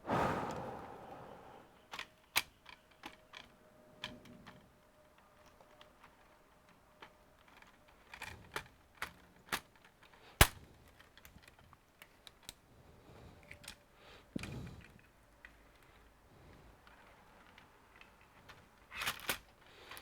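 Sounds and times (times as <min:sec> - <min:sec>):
plastic laptop parts clicking: 0:01.9 - 0:12.6, 0:16.8 - 0:20.0.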